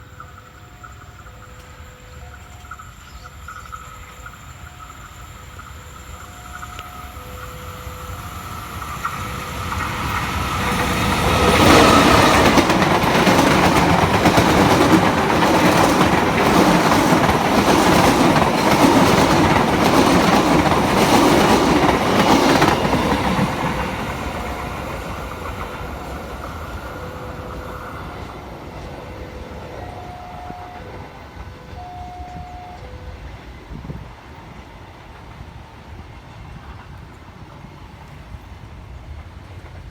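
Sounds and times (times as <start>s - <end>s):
faint steady tones: 0.0s - 18.7s
train wheels clattering: 8.3s - 31.5s.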